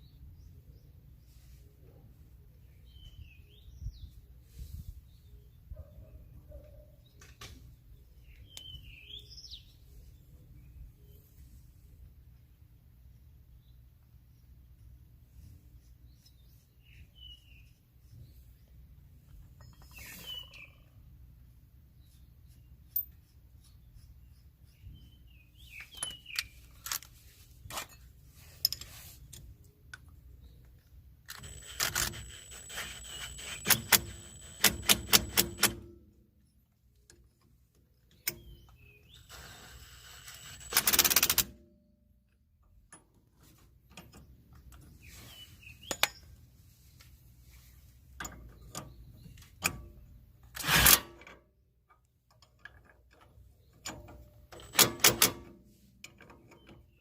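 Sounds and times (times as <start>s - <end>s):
birds chirping faintly: 0.0s - 40.7s, 41.9s - 50.5s
tools and metal parts clinking: 19.3s - 20.5s, 22.8s - 23.4s, 25.6s - 30.2s, 31.2s - 35.9s, 45.8s - 46.4s, 48.2s - 57.0s
fast clicks: 31.3s - 35.8s.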